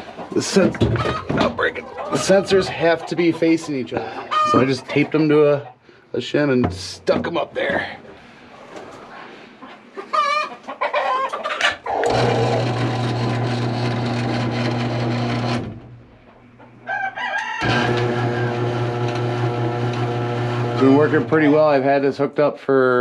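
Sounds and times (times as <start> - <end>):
chickens clucking: 0.0 - 6.0, 8.1 - 12.3, 16.1 - 17.6
garage door opener motor humming: 12.0 - 16.0, 17.6 - 21.4.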